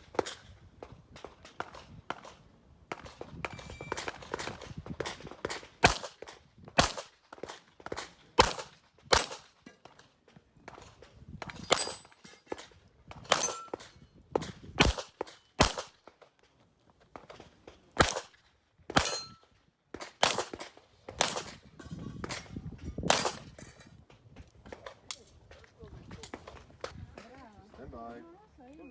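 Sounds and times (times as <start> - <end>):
handgun shots: 3.5 - 7.1, 8.0 - 9.4, 14.8 - 15.9, 23.1 - 23.5.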